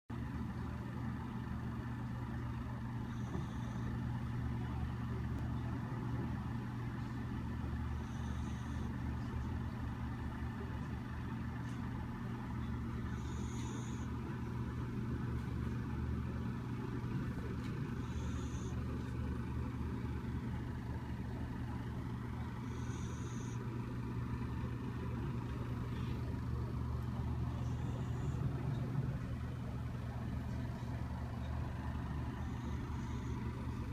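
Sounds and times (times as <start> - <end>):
steady low hum: 0.1 - 33.9
dog snoring with whistling wheeze: 2.9 - 4.4, 7.8 - 9.3, 12.9 - 14.2, 17.3 - 19.1, 22.1 - 23.8, 27.4 - 29.2, 30.9 - 33.9.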